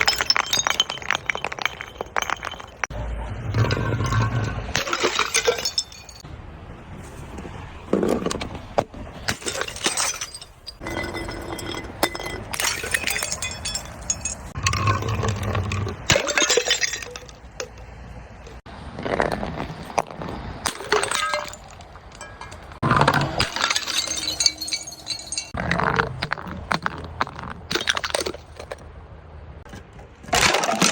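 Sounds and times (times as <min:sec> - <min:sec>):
glass bottles crushing: 0:00.0 - 0:02.9, 0:03.5 - 0:06.2, 0:09.2 - 0:18.5, 0:19.2 - 0:28.8
glass shards clinking: 0:00.0 - 0:02.9, 0:03.5 - 0:06.2, 0:09.3 - 0:18.0, 0:20.6 - 0:25.8.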